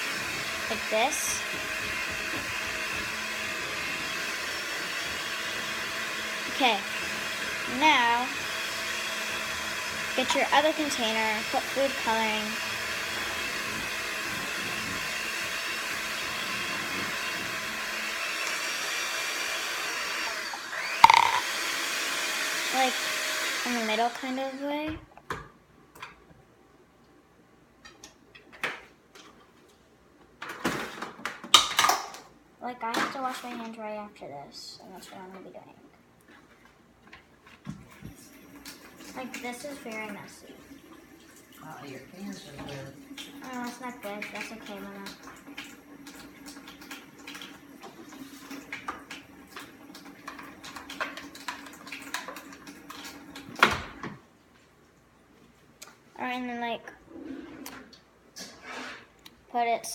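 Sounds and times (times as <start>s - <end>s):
water running from a tap: 0.0s - 24.3s, 37.9s - 53.9s.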